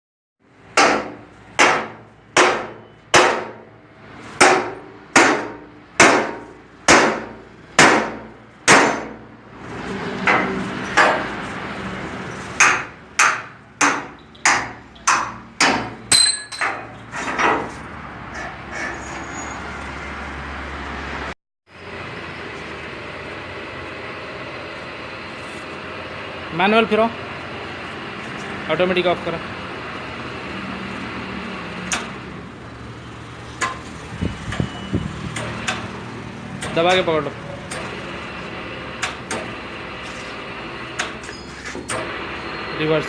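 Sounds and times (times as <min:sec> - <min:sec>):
hammer striking metal: 0:00.7 - 0:03.7, 0:04.4 - 0:09.3, 0:10.2 - 0:11.4, 0:12.6 - 0:17.7.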